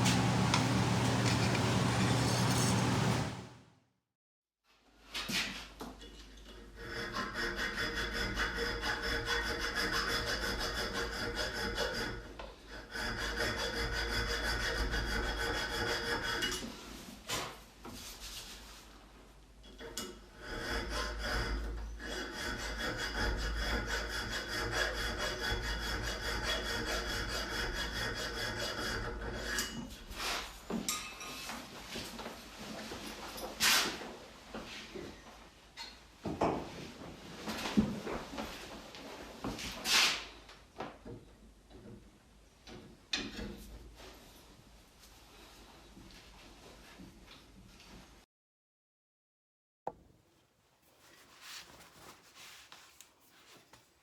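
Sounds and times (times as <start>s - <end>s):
power sander grinding metal: 0.0s - 3.5s.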